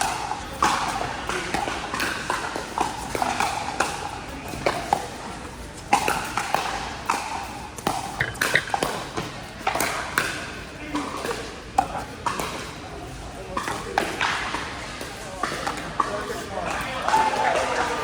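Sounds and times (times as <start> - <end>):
murmur of voices: 0.0 - 18.0
paddles hitting plastic ball: 7.9 - 9.4.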